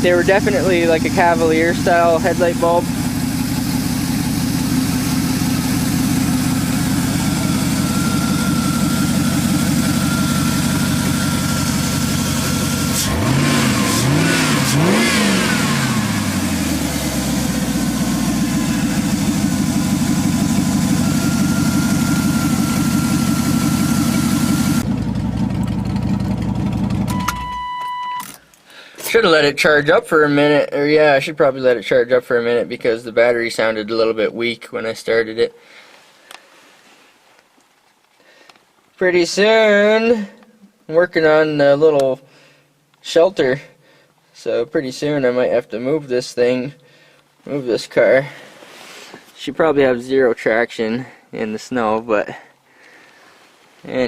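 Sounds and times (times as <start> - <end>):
car engine idling and revving: 0.0 - 28.2
short electronic beep: 27.1 - 28.4.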